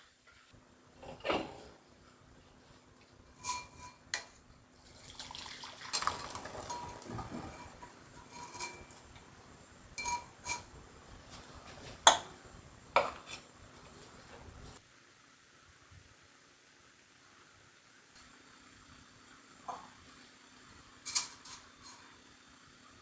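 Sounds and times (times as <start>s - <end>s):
dishes and utensils clinking: 1.0s - 1.8s, 3.3s - 4.4s, 5.9s - 9.3s, 10.0s - 10.7s, 21.0s - 22.2s.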